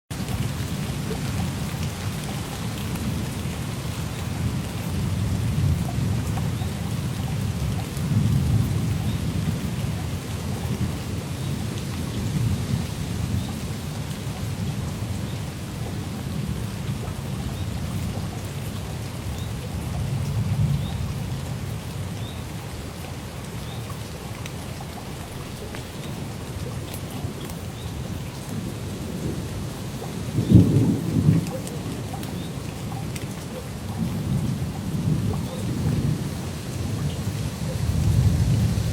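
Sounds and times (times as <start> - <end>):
steady rain: 0.1 - 38.9
rolling thunder: 28.6 - 32.6.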